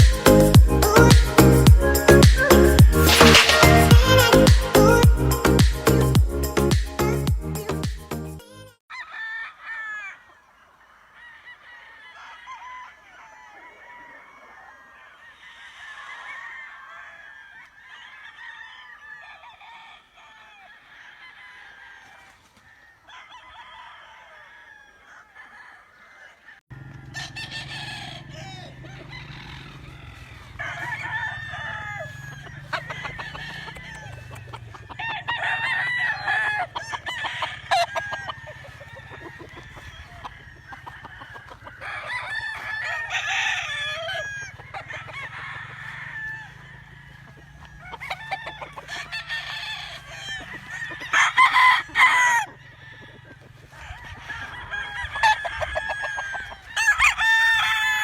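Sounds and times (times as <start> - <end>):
hens clucking: 0.0 - 7.1, 25.1 - 58.0
roosters crowing: 0.0 - 8.1, 8.9 - 58.0.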